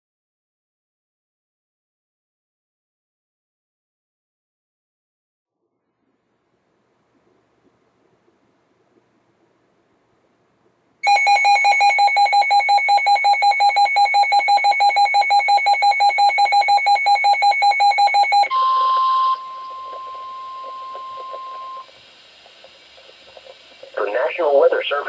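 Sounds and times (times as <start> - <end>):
rapidly pulsing beep: 11.0 - 21.9
steady alarm tone: 11.0 - 24.2.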